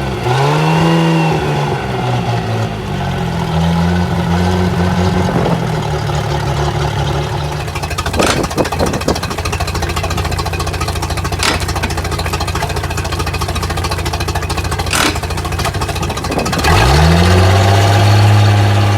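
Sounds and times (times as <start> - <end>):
boat engine idling and revving: 0.0 - 18.9
sharp clicks: 8.0 - 12.8, 14.5 - 17.0.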